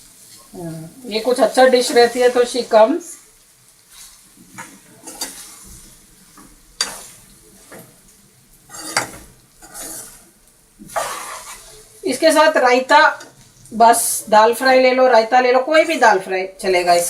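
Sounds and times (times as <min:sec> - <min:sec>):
vegetables sizzling: 0:00.0 - 0:17.0
spoon scraping a pan: 0:03.9 - 0:08.0, 0:08.6 - 0:12.5.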